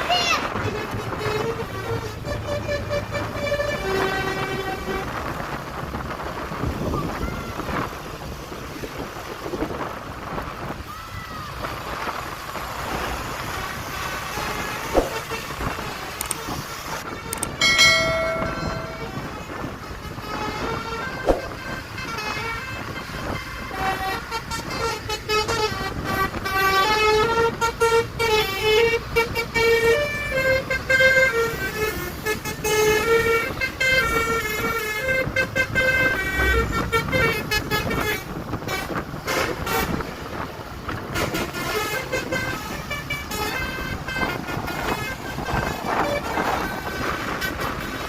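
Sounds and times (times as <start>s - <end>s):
road and engine noise: 0.0s - 48.0s
musical air horn melody: 13.9s - 40.3s.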